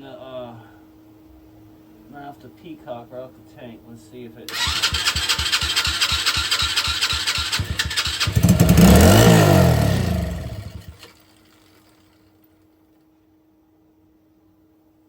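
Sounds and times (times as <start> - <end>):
small engine chugging and revving: 4.5 - 12.1.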